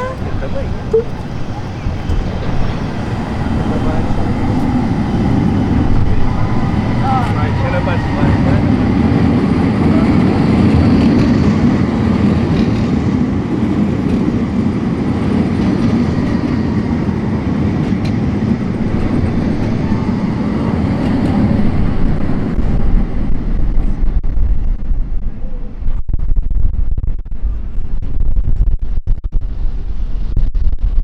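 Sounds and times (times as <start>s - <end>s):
passing vehicle rumble: 0.0s - 23.8s
wind buffeting microphone: 0.0s - 30.7s.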